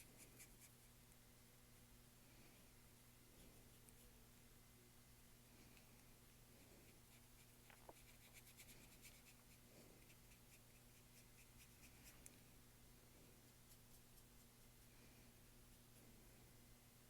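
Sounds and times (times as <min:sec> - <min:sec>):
low room hum: 0:00.0 - 0:17.0
paintbrush strokes on canvas: 0:06.7 - 0:12.3.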